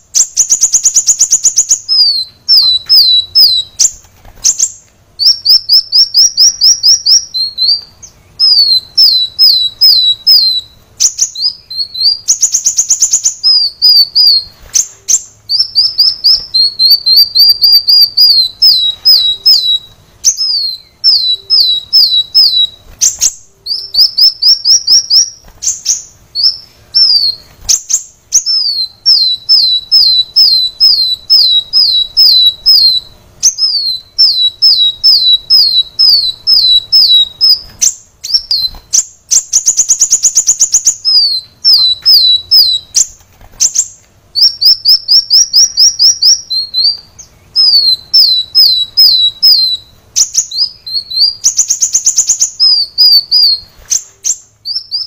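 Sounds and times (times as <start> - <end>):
sunbird chirping song: 0.0 - 55.0.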